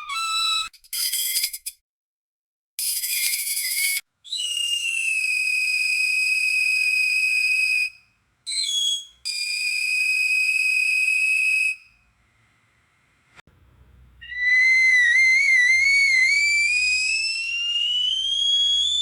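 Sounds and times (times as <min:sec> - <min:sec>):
metal gate hinge squealing: 0:00.0 - 0:01.8.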